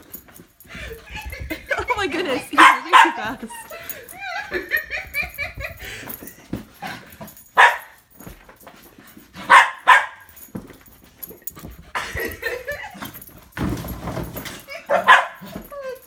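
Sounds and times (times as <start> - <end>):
dog barking: 2.6 - 3.4, 7.6 - 8.0, 9.4 - 10.3, 14.9 - 15.6.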